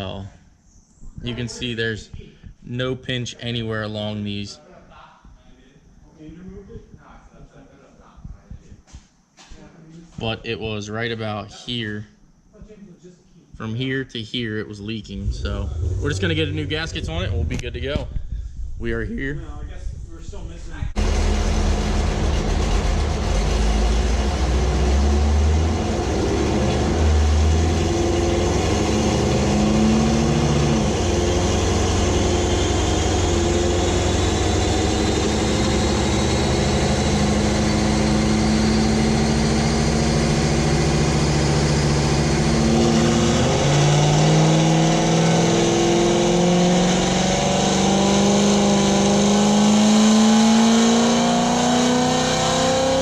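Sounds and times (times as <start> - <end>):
car engine running and accelerating: 15.1 - 18.0, 21.0 - 53.0.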